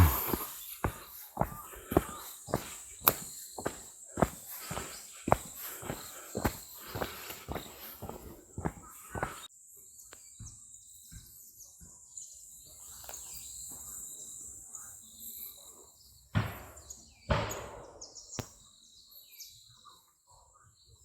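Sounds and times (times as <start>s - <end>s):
footsteps on a trail: 0.0s - 9.5s
insects chirring: 0.0s - 9.5s.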